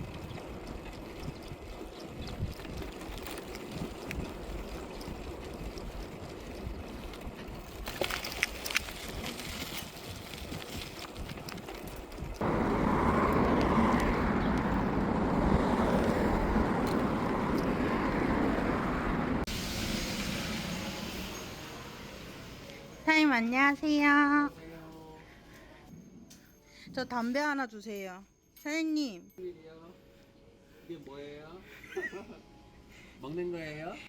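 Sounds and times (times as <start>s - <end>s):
wind rushing over microphone: 12.1s - 19.5s.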